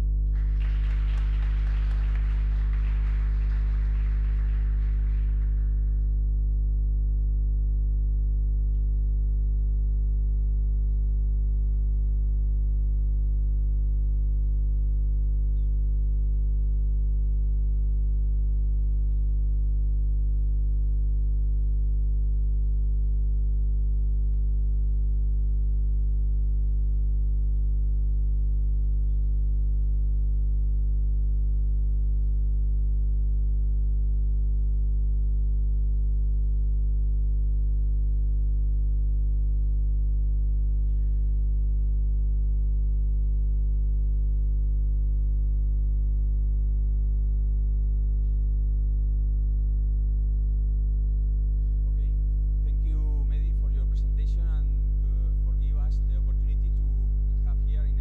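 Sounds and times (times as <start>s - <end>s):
loud electrical mains hum: 0.0s - 6.5s.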